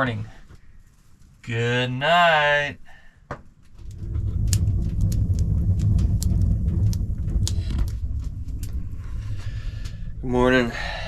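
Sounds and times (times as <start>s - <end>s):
storm wind rumbling: 3.7s - 11.0s.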